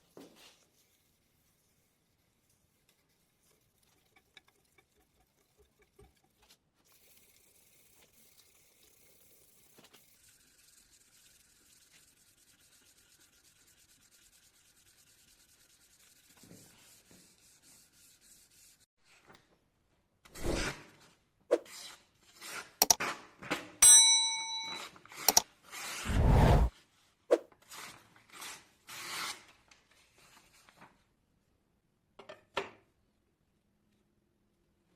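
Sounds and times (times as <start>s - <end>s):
short metallic ring: 23.8s - 24.9s.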